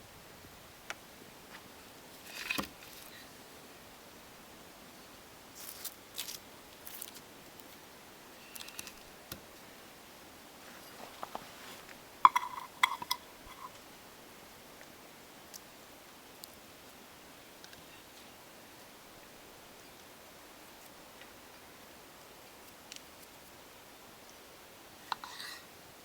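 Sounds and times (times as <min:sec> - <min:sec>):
soft rustles: 0:10.5 - 0:12.0.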